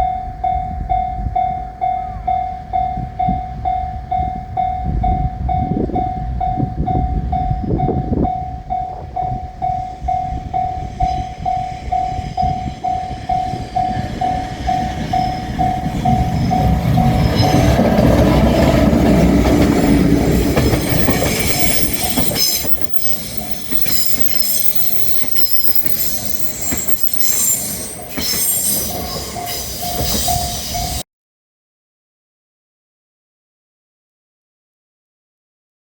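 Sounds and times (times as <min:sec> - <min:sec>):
level crossing bell dinging: 0:00.0 - 0:31.0
train passing close by: 0:00.0 - 0:31.0
wheel clatter over rail joints: 0:12.5 - 0:31.0.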